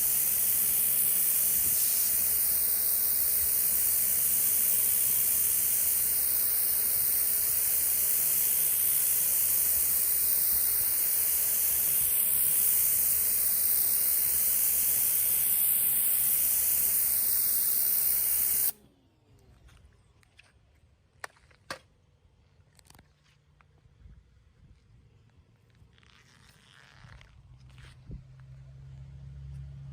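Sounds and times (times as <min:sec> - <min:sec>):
pressure washer spray hiss: 0:00.0 - 0:18.8
faint motor hum: 0:00.0 - 0:20.1.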